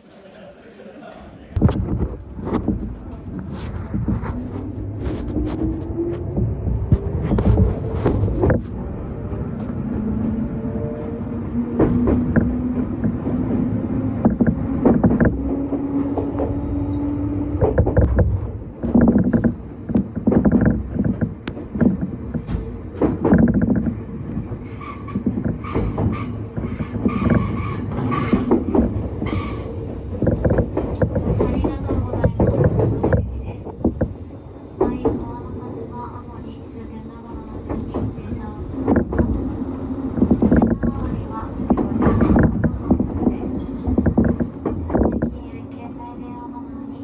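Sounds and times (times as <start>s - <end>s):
wheels clacking over rail joints: 11.0s - 35.4s, 37.5s - 45.6s.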